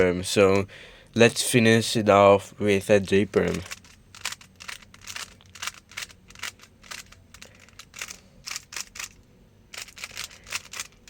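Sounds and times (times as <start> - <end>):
plastic cube clicking: 3.4 - 9.2, 9.8 - 11.0.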